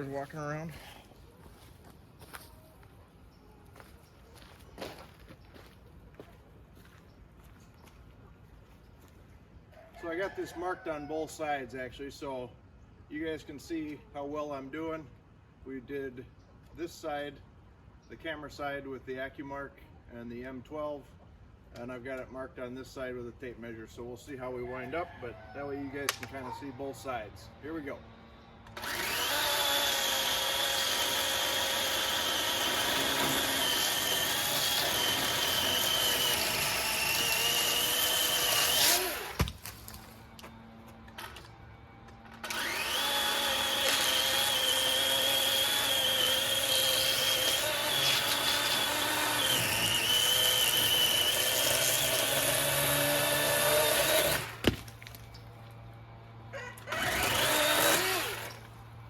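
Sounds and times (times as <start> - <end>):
electric chainsaw cutting wood: 28.7 - 55.2, 56.7 - 58.8.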